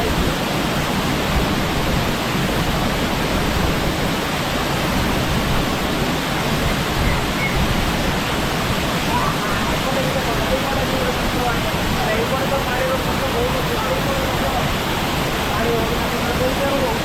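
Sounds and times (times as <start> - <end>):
waterfall crashing onto rocks: 0.0 - 17.0.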